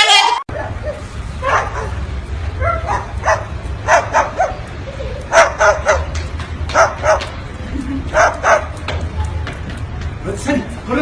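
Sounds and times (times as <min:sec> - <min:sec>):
yapping bark-like calls: 0:00.6 - 0:07.4, 0:08.0 - 0:09.4.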